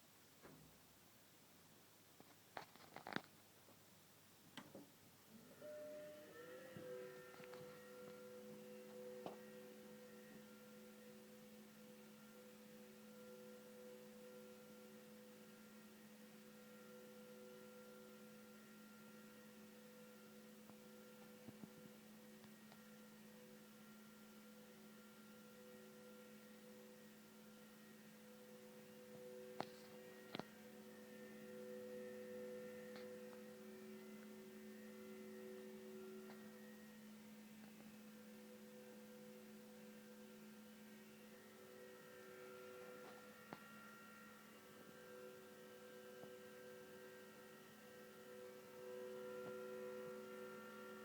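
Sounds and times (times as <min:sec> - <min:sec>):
computer whirring hum: 0:04.0 - 0:51.0.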